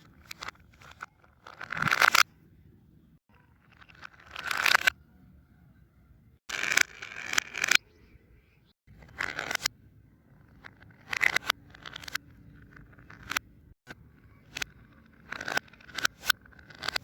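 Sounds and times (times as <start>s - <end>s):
reversed toy ball handling bursts: 8.9s - 9.7s, 10.3s - 13.4s, 14.4s - 17.0s.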